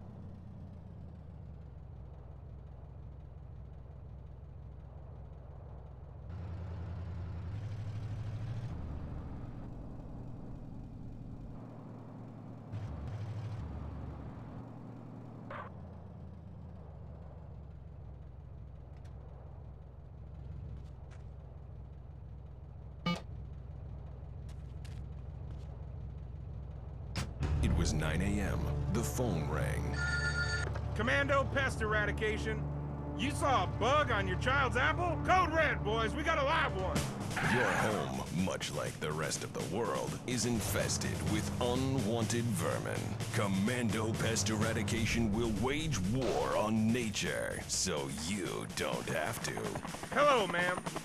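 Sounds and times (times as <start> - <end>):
vehicle engine humming: 0.0 - 51.0.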